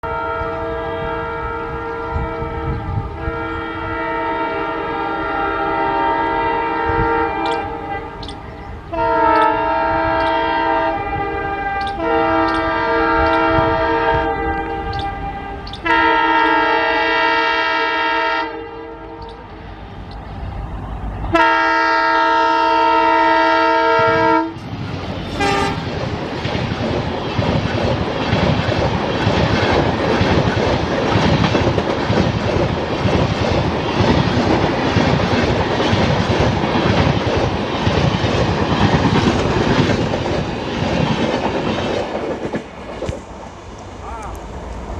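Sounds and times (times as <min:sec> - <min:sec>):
locomotive horn blasts: 0:00.0 - 0:19.6, 0:21.3 - 0:24.6, 0:25.3 - 0:25.9
train wheels clattering on rails: 0:07.3 - 0:16.6, 0:24.5 - 0:43.6.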